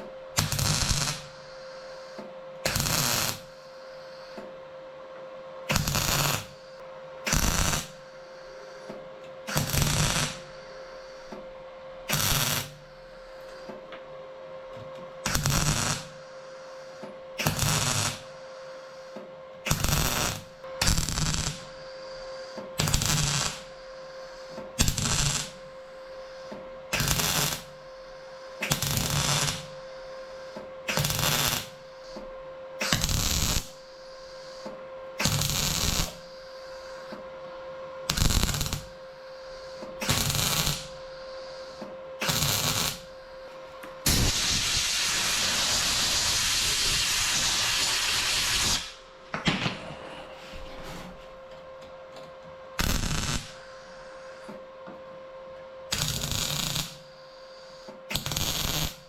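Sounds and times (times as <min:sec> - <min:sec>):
steady hum: 0:00.0 - 0:59.0
welder crackling bursts: 0:00.4 - 0:01.4, 0:02.6 - 0:03.6, 0:05.7 - 0:06.6, 0:07.3 - 0:08.0, 0:09.5 - 0:10.5, 0:12.1 - 0:12.8, 0:15.2 - 0:16.2, 0:17.4 - 0:18.4, 0:19.7 - 0:21.7, 0:22.8 - 0:23.7, 0:24.8 - 0:25.6, 0:26.9 - 0:27.8, 0:28.6 - 0:29.8, 0:30.9 - 0:31.8, 0:32.8 - 0:33.9, 0:35.2 - 0:36.3, 0:38.1 - 0:39.0, 0:40.0 - 0:41.0, 0:42.2 - 0:43.1, 0:44.0 - 0:49.1, 0:52.8 - 0:53.6, 0:55.9 - 0:57.0, 0:58.1 - 0:59.0.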